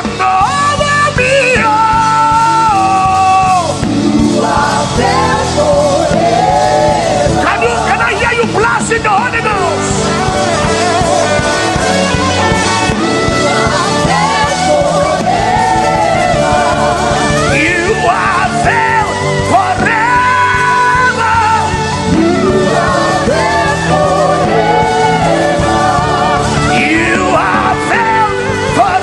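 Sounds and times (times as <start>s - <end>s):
instrumental worship music: 0.0s - 29.0s
person singing without words: 0.0s - 29.0s.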